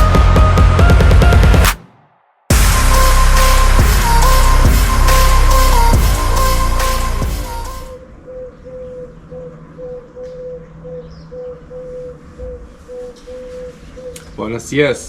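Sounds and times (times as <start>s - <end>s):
bird hooting: 7.9s - 14.4s.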